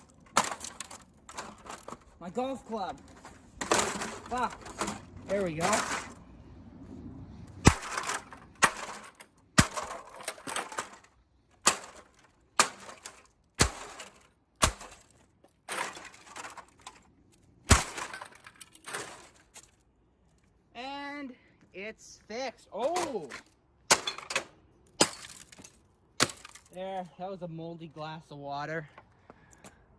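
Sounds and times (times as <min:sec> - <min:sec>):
pieces rattling: 0:00.0 - 0:06.2, 0:07.7 - 0:17.1
plastic and glass crunching: 0:00.0 - 0:06.2, 0:07.6 - 0:19.8, 0:22.9 - 0:26.9
golf club smashing electronics: 0:07.6 - 0:11.0.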